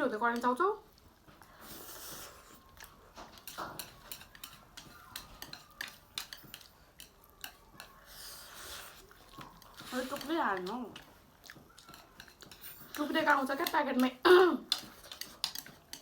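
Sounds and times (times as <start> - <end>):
chopsticks clicking against a bowl: 2.7 - 8.0, 9.2 - 16.0.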